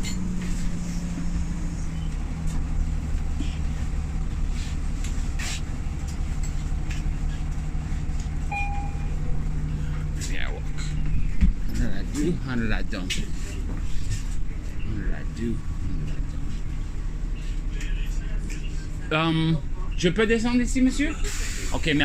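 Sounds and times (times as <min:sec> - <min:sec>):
bus engine rumbling: 0:00.0 - 0:22.0
short beep: 0:08.5 - 0:09.2.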